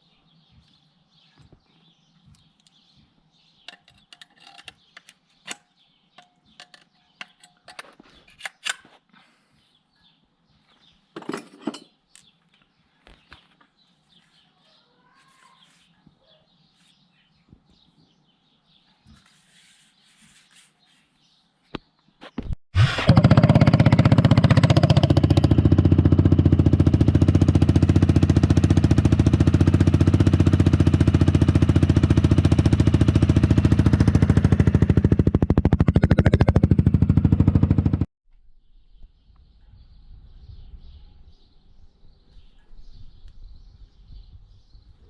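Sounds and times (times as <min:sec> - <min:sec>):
faint bird chirps: 0:11.8 - 0:22.4, 0:38.4 - 0:45.0
scooter engine idling and revving: 0:22.8 - 0:38.1.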